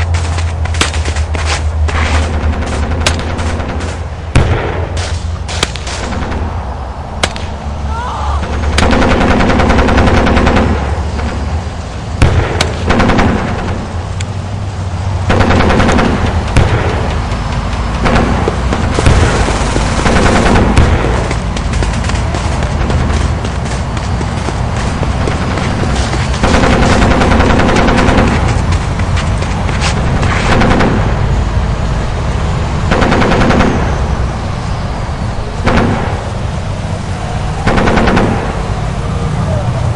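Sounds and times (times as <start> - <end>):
low battlefield rumble: 0.0 - 39.9
machine-gun fire: 8.4 - 11.4, 12.2 - 13.8, 15.2 - 17.2, 17.9 - 23.7, 24.8 - 28.9, 30.4 - 31.2, 32.9 - 33.9, 37.6 - 38.6.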